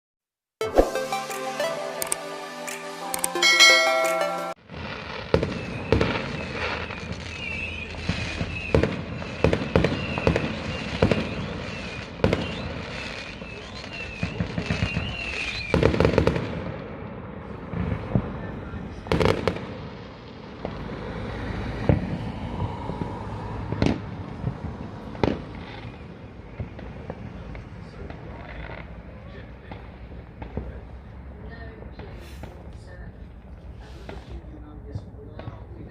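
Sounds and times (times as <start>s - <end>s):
music: 0.6s - 4.6s
firework whistle: 2.7s - 16.4s, 20.6s - 27.2s
fireworks crackling bangs: 4.6s - 22.3s, 23.0s - 30.9s.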